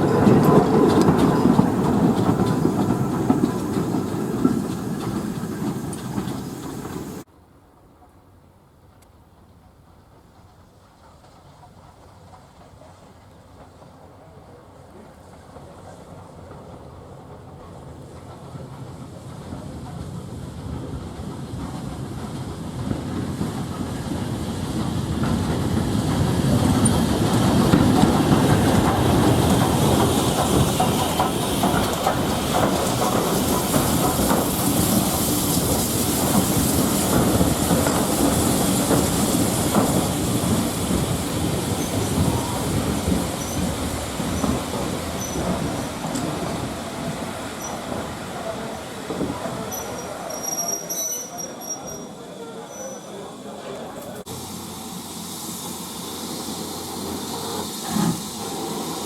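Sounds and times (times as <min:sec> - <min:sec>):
train wheels clicking over rail joints: 0:00.0 - 0:53.0, 0:53.7 - 0:59.0
high hiss: 0:25.8 - 0:59.0.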